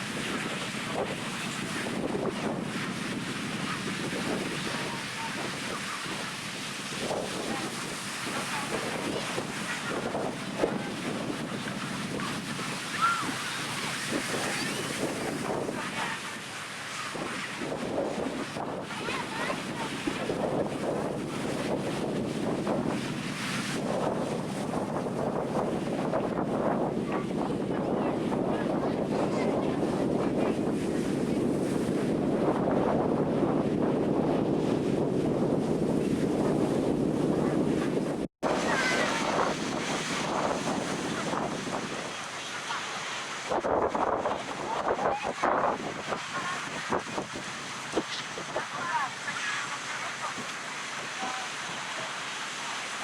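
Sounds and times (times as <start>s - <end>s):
ocean surf washing onto beach: 0.0s - 53.0s
wind buffeting microphone: 0.0s - 53.0s.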